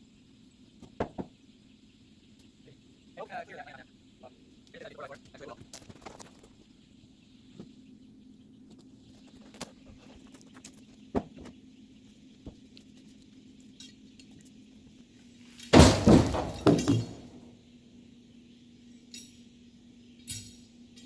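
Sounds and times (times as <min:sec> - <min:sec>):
faint steady hum: 0:00.0 - 0:21.0
clatter of knocks and thuds: 0:00.8 - 0:01.4, 0:15.8 - 0:17.4
sharp knock: 0:15.8 - 0:17.2.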